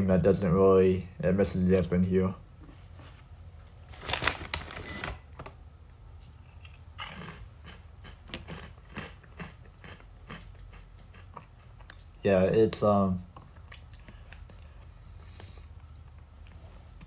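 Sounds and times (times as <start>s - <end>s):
snack bag crinkling: 3.9s - 5.4s
chips being chewed: 6.5s - 12.2s, 13.3s - 15.0s.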